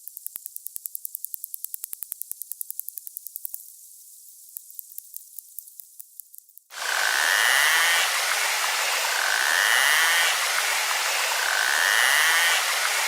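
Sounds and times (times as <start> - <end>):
loud hiss: 6.7 - 13.0
whistle-like calls: 6.8 - 13.0.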